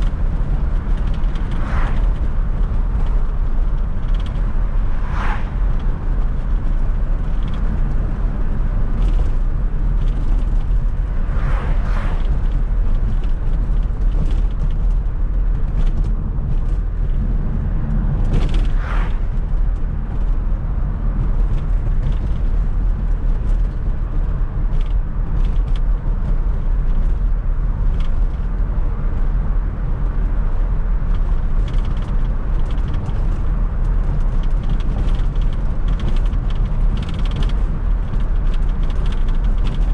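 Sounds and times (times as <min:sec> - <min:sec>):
engine and road drone: 0:00.0 - 0:39.9.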